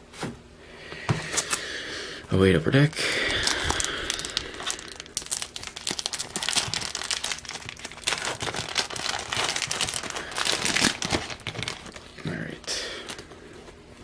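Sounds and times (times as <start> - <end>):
foil wrapper crinkling and tearing: 3.1 - 13.3.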